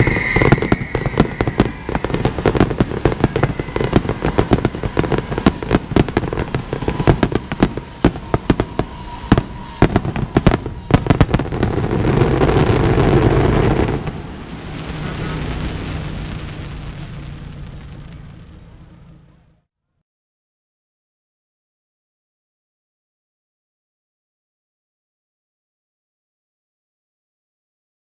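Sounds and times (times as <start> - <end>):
fireworks bangs and cracks: 0.0 - 19.4
fireworks crackle and hiss: 0.0 - 19.4.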